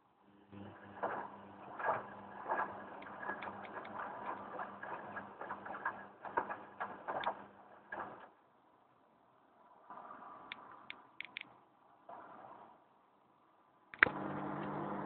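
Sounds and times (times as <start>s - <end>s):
washing machine running: 0.4s - 8.3s, 14.0s - 15.0s.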